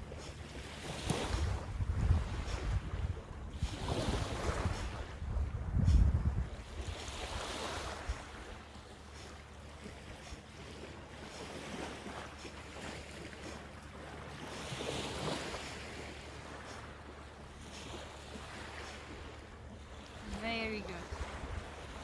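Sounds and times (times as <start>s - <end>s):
wind on microphone: 0.0s - 8.7s, 17.8s - 22.0s
sea surf: 0.0s - 22.0s.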